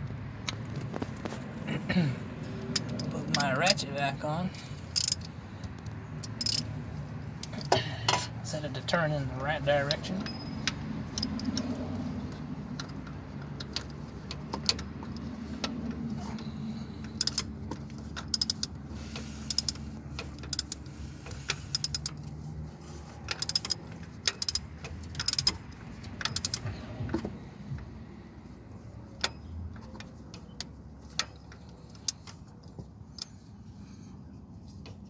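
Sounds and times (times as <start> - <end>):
socket ratchet clicking: 2.7 - 3.8, 5.0 - 5.3, 6.2 - 6.7, 11.1 - 11.6, 17.2 - 17.5, 18.2 - 18.8, 19.4 - 20.9, 21.7 - 22.2, 23.3 - 26.7.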